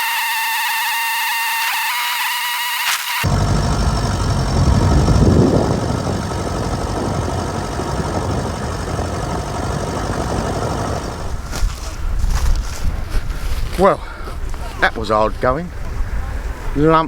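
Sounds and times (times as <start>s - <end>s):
tractor engine running: 3.0s - 14.7s.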